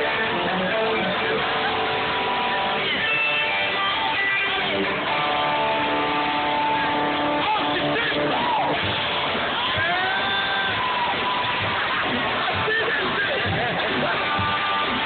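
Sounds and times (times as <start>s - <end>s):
live strummed guitar music: 0.0s - 15.0s.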